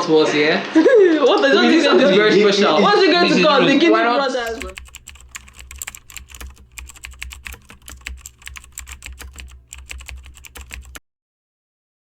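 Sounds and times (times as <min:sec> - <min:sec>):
typing on computer keyboard: 0:04.5 - 0:11.0.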